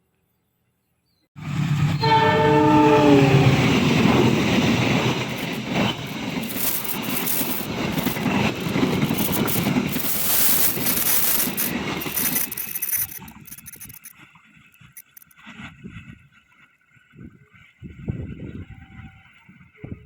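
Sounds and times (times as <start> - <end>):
train rumbling past: 1.4 - 12.6
train horn: 1.5 - 4.4
wheels clicking over rail joints: 3.7 - 14.1.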